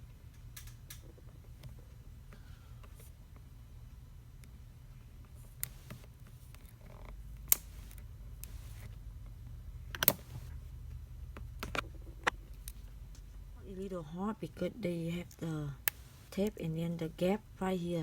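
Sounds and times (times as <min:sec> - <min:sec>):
faint low hum: 0:00.0 - 0:18.0
plastic clicks and snaps: 0:05.6 - 0:08.9, 0:09.9 - 0:10.6, 0:15.3 - 0:16.6.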